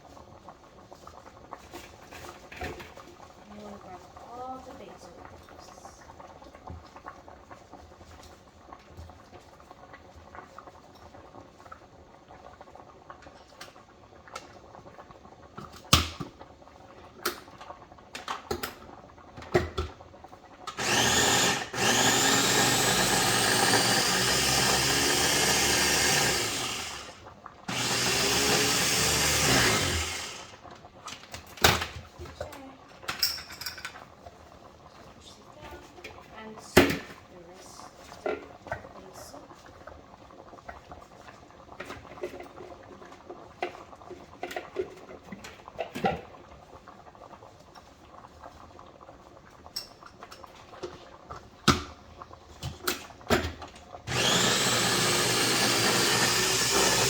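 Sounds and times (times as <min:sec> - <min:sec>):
electric blender whine: 0:20.7 - 0:30.6, 0:54.1 - 0:57.0.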